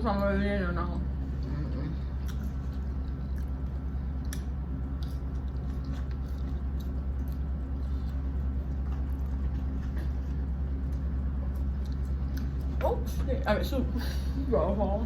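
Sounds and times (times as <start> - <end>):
steady low hum: 0.0 - 15.0
person chewing food: 2.0 - 12.7.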